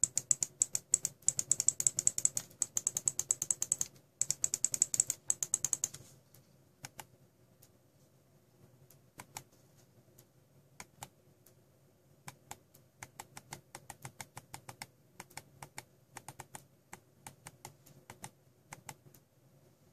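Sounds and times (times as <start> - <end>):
mouse buttons clicking: 0.0 - 6.1, 6.8 - 7.8, 9.2 - 9.5, 10.2 - 11.2, 12.2 - 19.2.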